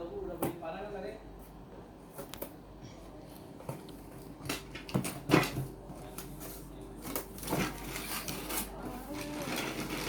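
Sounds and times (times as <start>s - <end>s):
packaging rustles: 4.5s - 10.0s.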